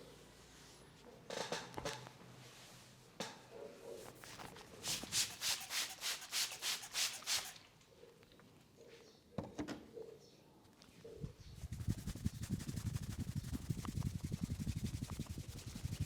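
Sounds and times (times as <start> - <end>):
hand rubbing on skin: 4.0 - 7.6, 11.6 - 16.0.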